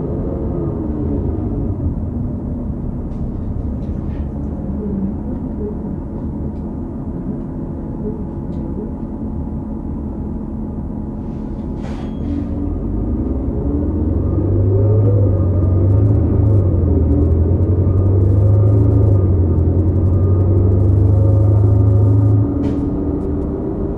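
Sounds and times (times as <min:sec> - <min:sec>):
diesel bus engine rumble: 0:00.0 - 0:23.9
falling whine: 0:14.2 - 0:23.3.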